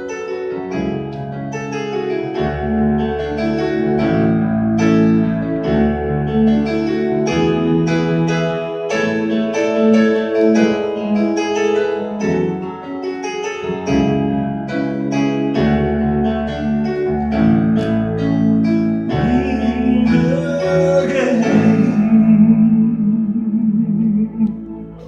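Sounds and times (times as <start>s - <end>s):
person singing a wavering note: 19.1s - 25.0s.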